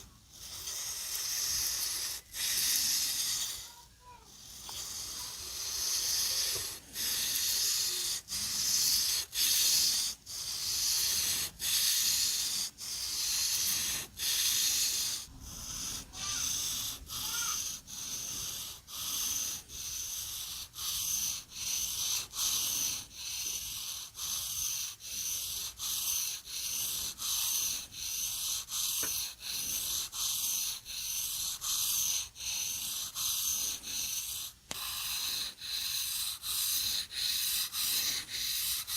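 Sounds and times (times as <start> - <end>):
knife blade rasping on abrasive: 24.7 - 38.9.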